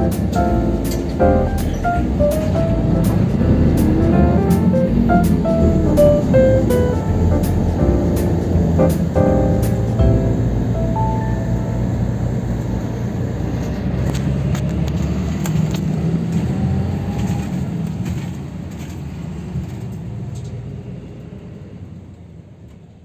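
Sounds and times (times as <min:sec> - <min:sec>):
low rumble of motor traffic: 0:00.0 - 0:23.0.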